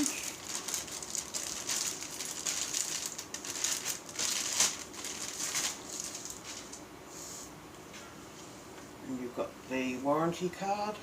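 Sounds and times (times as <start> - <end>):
packaging crinkling: 0.0 - 6.8.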